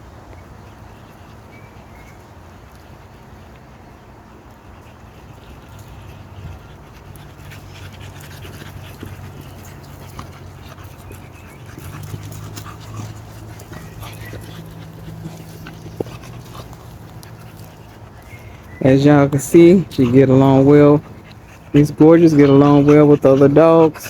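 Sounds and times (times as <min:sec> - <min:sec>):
dogs panting: 0:00.3 - 0:24.0
light clicks and scuffs: 0:04.4 - 0:20.1.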